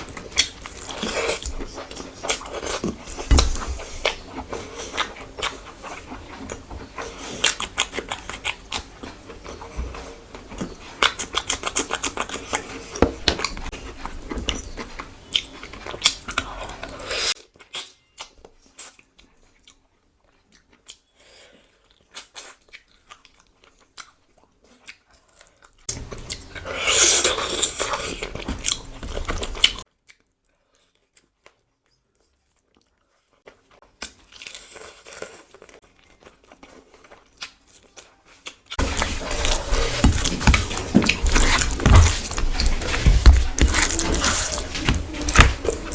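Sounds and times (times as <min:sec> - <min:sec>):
chewing and crunching food: 0:00.0 - 0:45.9.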